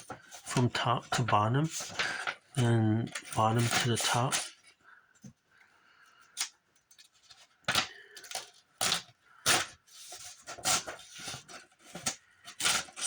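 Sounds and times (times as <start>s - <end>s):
book pages tearing: 1.3s - 4.4s, 7.6s - 13.0s.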